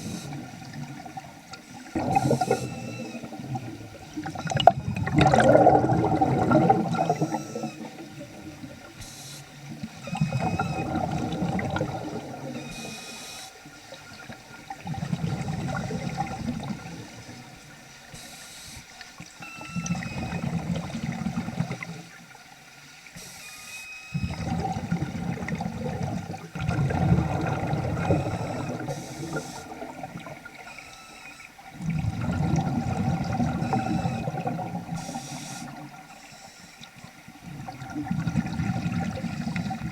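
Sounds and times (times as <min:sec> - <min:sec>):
regulator breath bubbling rush: 0:00.0 - 0:13.6, 0:23.2 - 0:31.2, 0:31.8 - 0:36.8
short high-pitched chirps: 0:02.2 - 0:03.3, 0:12.5 - 0:13.5, 0:19.4 - 0:20.6.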